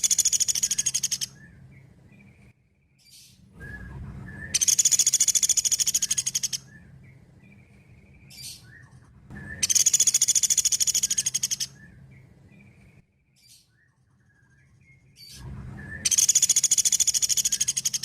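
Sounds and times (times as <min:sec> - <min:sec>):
woodpecker rattling trills: 0:00.0 - 0:02.4, 0:04.6 - 0:08.8, 0:09.4 - 0:13.0, 0:16.0 - 0:18.0.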